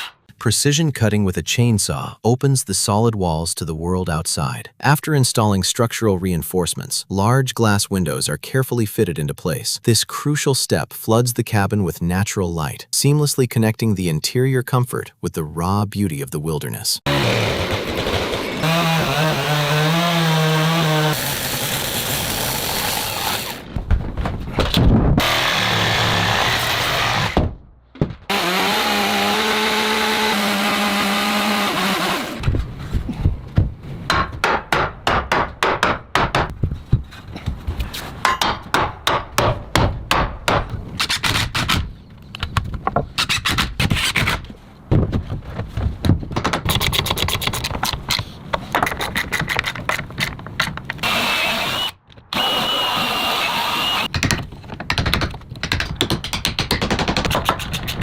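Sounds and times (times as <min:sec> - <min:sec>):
power tool running: 0:17.1 - 0:23.7, 0:25.2 - 0:27.4, 0:28.3 - 0:32.4, 0:51.0 - 0:54.1
power tool whining: 0:17.1 - 0:23.7, 0:25.2 - 0:27.4, 0:28.3 - 0:32.4, 0:51.0 - 0:54.1
rapid knocking and tapping: 0:54.1 - 0:58.0.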